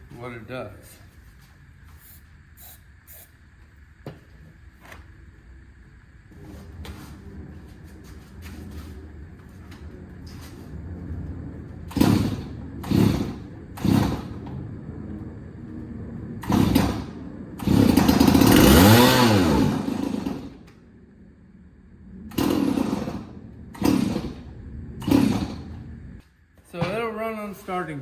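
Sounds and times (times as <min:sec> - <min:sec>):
chainsaw pull-starting: 0:11.9 - 0:14.4, 0:16.4 - 0:20.7, 0:22.3 - 0:24.4, 0:25.0 - 0:25.7
chainsaw running in short bursts: 0:11.9 - 0:14.4, 0:16.4 - 0:20.6, 0:22.3 - 0:24.4, 0:25.0 - 0:25.6.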